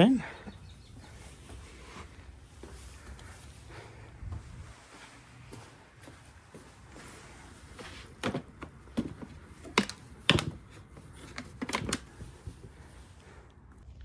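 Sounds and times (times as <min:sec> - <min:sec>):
plastic parts clicking and knocking: 0:08.2 - 0:12.8.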